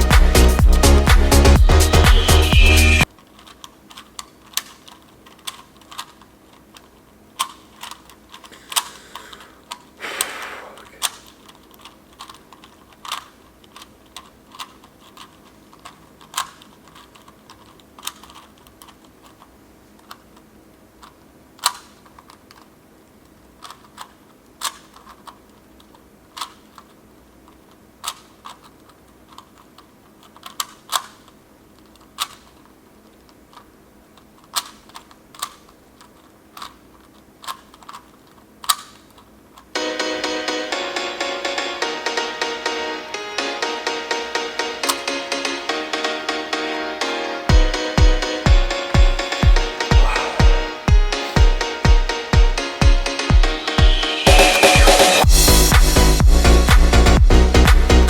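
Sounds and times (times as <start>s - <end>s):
puzzle cube clicking: 3.4s - 20.2s, 23.6s - 26.9s, 28.0s - 32.6s, 34.4s - 39.3s.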